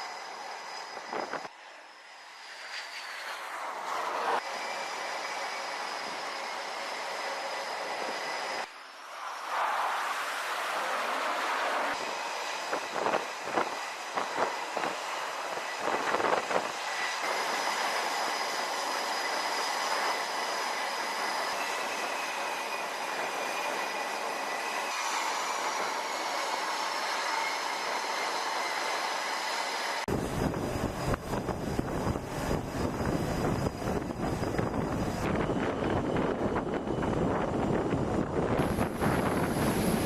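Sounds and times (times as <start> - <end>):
jet engines roaring with whine: 0.0 - 40.0.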